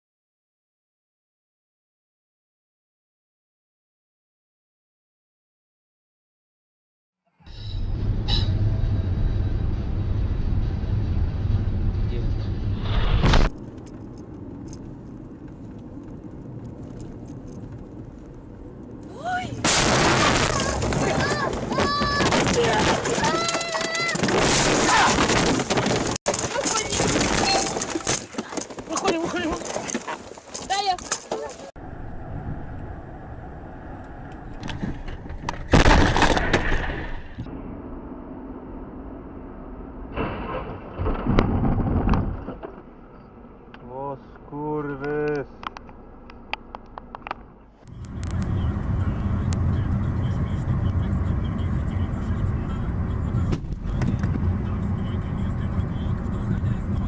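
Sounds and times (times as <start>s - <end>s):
car driving rumble: 7.5s - 57.0s
road noise: 7.5s - 57.0s
car crash impact: 19.6s - 28.6s, 34.8s - 37.5s, 40.1s - 42.9s.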